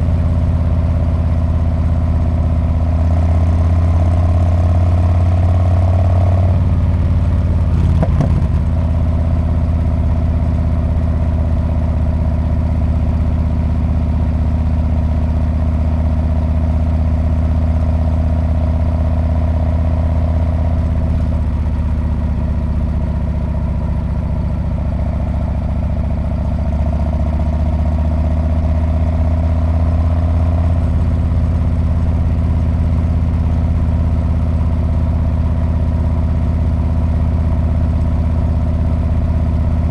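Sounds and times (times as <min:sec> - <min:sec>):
motorcycle engine running: 0:00.0 - 0:39.9
brief rattle: 0:07.7 - 0:08.9.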